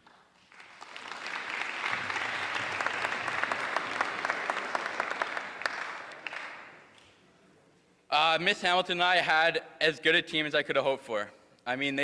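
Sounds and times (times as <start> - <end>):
audience applauding: 0.4 - 7.0.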